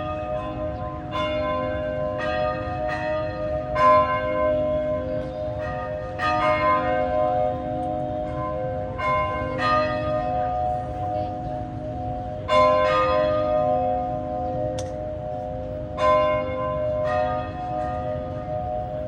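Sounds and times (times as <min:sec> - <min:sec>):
church bells ringing: 0:00.0 - 0:19.0.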